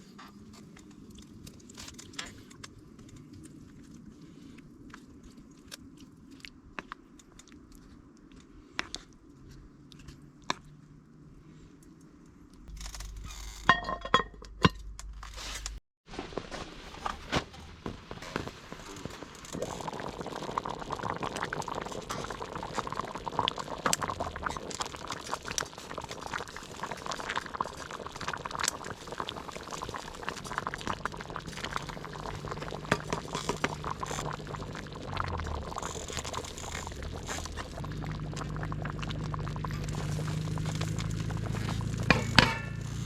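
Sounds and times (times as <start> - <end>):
stew bubbling in a pot: 17.8 - 43.0.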